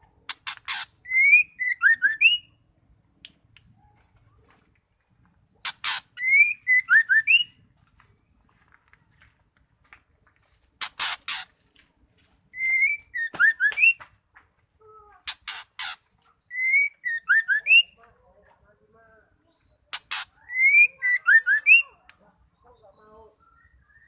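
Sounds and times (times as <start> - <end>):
bird song with whistled notes: 1.0 - 2.6, 5.8 - 8.5, 12.5 - 14.1, 16.0 - 18.0, 19.4 - 24.0.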